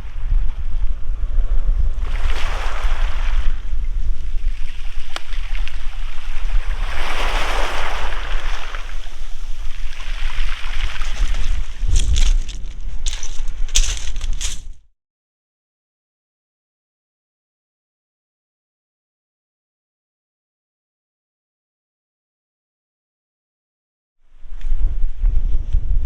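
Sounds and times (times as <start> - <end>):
wind buffeting microphone: 0.0 - 14.8, 24.3 - 26.0
sea waves washing up beach: 2.0 - 3.7, 4.3 - 14.6.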